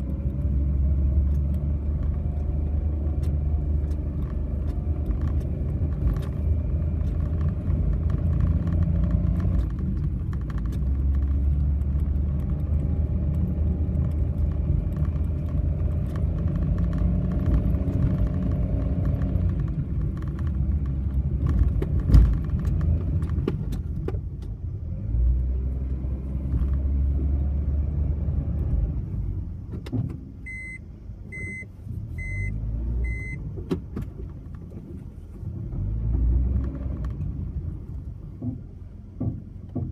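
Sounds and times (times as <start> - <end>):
rattling and clicking: 0.0 - 24.6
car engine and road noise: 0.0 - 39.9
short beeps: 30.5 - 33.4.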